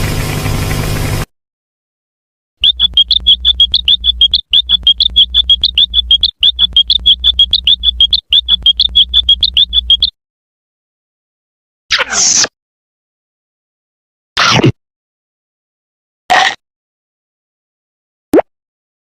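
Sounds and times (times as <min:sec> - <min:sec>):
high-pitched electronic chirping: 0:02.6 - 0:10.1
low hum: 0:02.6 - 0:10.1.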